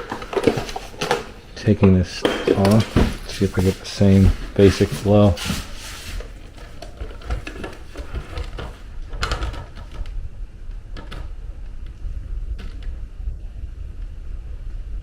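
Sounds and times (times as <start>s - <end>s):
plastic knocks and clatter: 0.0s - 10.1s
low rumble of air in duct: 0.0s - 15.0s.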